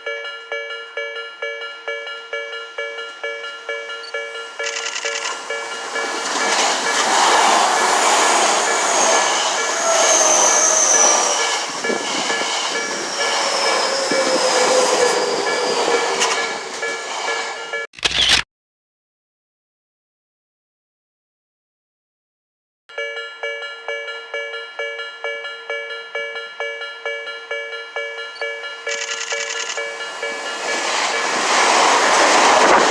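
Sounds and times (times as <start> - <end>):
train rushing and rumbling: 1.9 - 17.9, 28.4 - 32.9
held high tones: 3.3 - 17.8.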